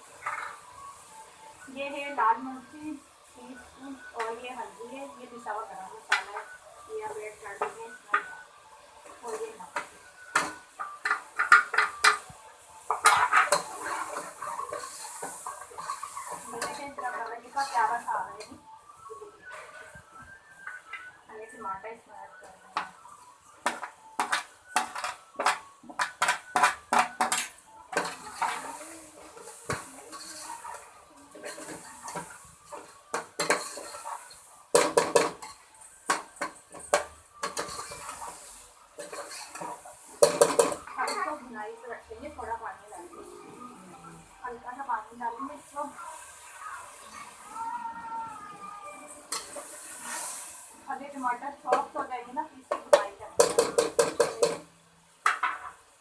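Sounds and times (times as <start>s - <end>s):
spoon clanking against a pot: 9.3s - 12.3s, 12.9s - 18.6s, 23.6s - 28.7s, 29.3s - 41.3s, 49.2s - 49.7s, 52.7s - 55.7s.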